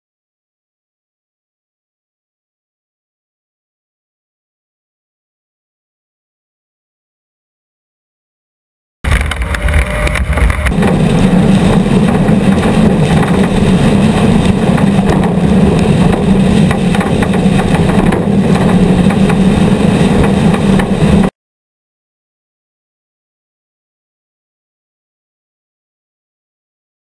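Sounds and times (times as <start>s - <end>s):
racing engine running hard: 9.1s - 21.3s.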